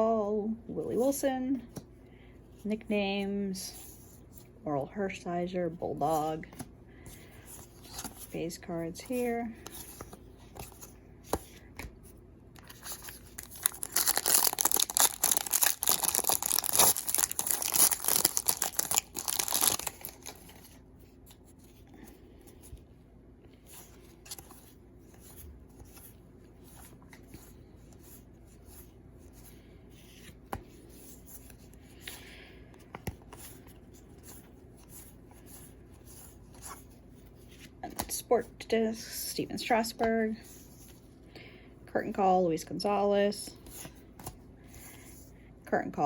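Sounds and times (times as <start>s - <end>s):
cards clicking and rustling: 9.6s - 21.4s, 30.1s - 35.1s
foil wrapper tearing and crinkling: 12.7s - 20.4s.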